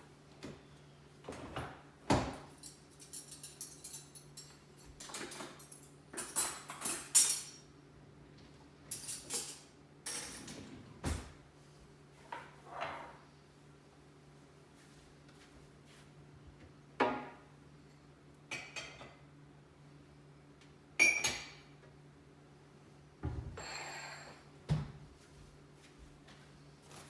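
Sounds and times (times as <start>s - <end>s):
dishes and cutlery clinking: 2.4s - 7.7s, 8.9s - 10.6s, 21.0s - 21.7s.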